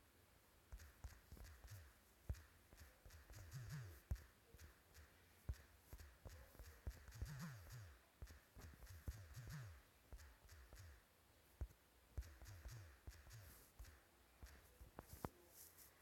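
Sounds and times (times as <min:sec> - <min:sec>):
faint clicks and taps: 0:00.7 - 0:16.0.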